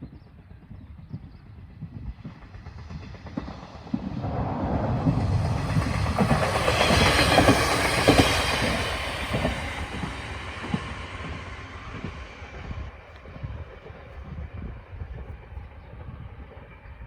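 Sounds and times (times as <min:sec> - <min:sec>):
train wheels clacking over rail joints: 0:01.8 - 0:13.3.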